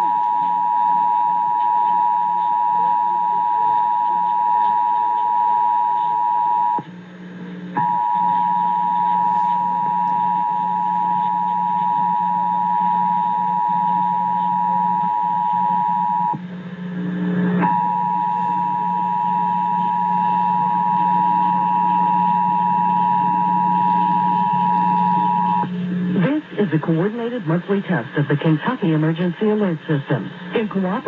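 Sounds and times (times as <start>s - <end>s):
low hum: 6.2s - 26.3s
two-tone attention signal: 17.6s - 25.7s.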